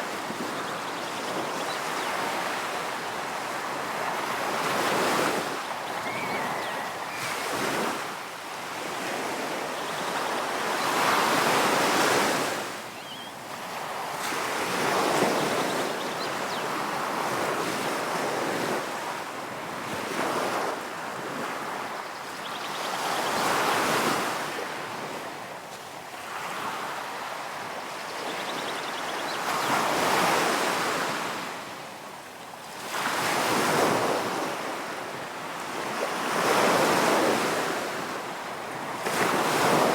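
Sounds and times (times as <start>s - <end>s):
ocean waves breaking: 2.2s - 9.7s.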